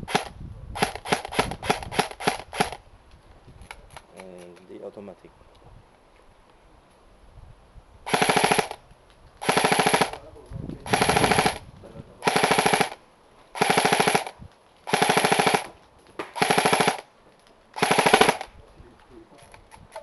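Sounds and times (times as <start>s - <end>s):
airsoft gun automatic bursts: 0.0s - 2.8s, 8.1s - 8.8s, 9.4s - 10.2s, 10.8s - 11.6s, 12.2s - 13.0s, 13.6s - 15.7s, 16.4s - 17.1s, 17.8s - 18.5s.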